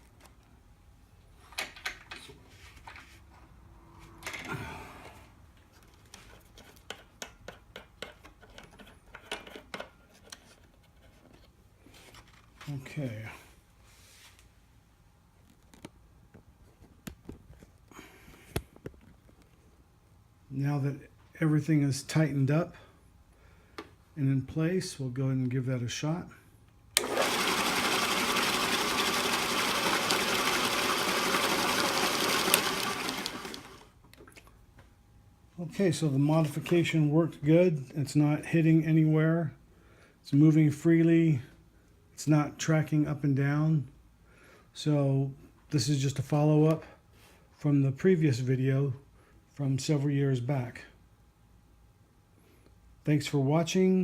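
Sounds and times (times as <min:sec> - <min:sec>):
scrape: 0:02.4 - 0:04.2, 0:13.8 - 0:14.6
sanding belt turning: 0:27.0 - 0:33.9.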